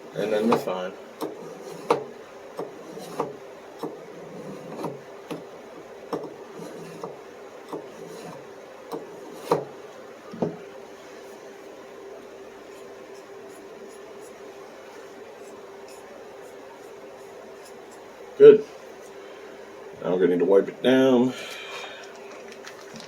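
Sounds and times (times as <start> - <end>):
knife blade scraping on sharpener: 1.2 - 2.0, 2.7 - 3.3, 4.2 - 5.0, 6.6 - 7.1, 7.7 - 8.4, 9.2 - 9.6.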